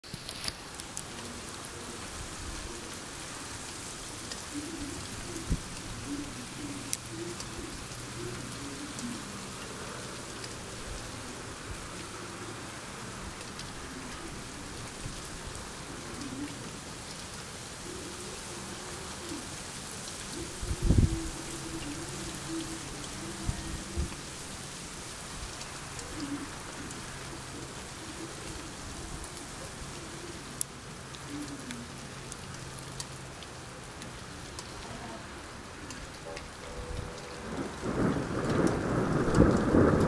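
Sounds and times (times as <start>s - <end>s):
rain pattering: 0.0s - 40.0s
water drips: 19.2s - 39.6s.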